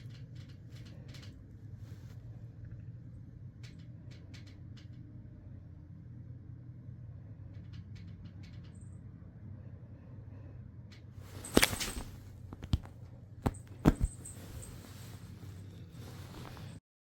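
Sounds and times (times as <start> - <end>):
brief rustle: 11.2 - 16.8.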